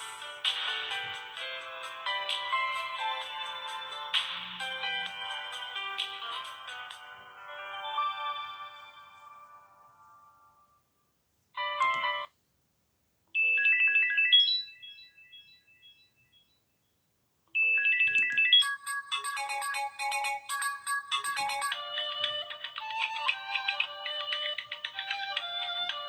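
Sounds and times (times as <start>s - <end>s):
phone ringtone melodies: 0.0s - 10.1s, 13.4s - 15.1s, 17.6s - 26.0s.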